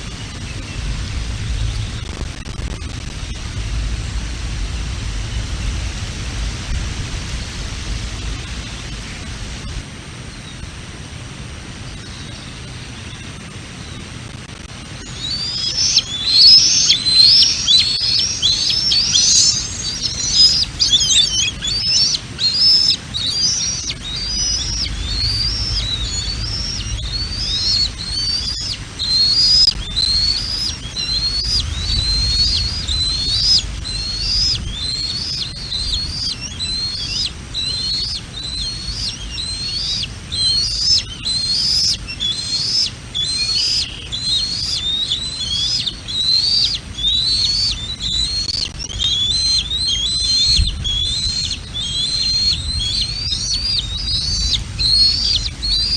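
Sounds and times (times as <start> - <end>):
eagle whistled calls: 0.0 - 3.8, 11.9 - 55.9
wind on microphone: 0.0 - 43.1, 44.1 - 55.9.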